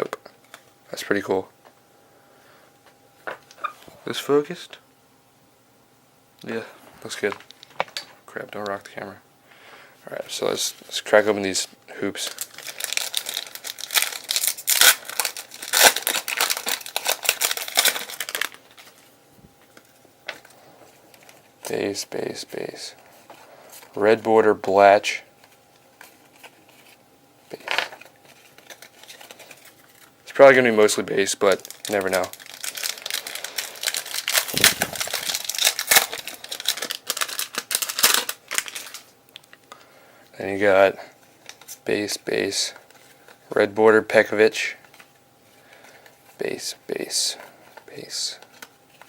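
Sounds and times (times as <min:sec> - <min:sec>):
plastic wrapper tearing and crinkling: 0:12.2 - 0:19.0, 0:26.0 - 0:30.1, 0:31.4 - 0:39.5, 0:41.4 - 0:41.8.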